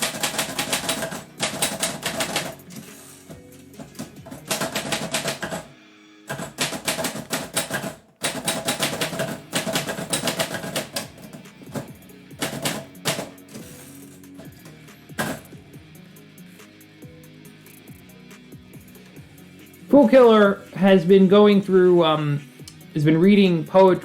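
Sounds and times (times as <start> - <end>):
typewriter keys clacking: 0.0 - 2.9, 3.8 - 5.7, 6.3 - 13.4
background music: 0.0 - 24.0.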